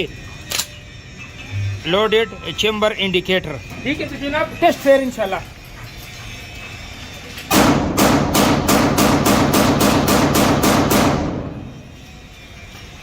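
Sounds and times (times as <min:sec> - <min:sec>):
pistol shots: 0:07.5 - 0:11.7.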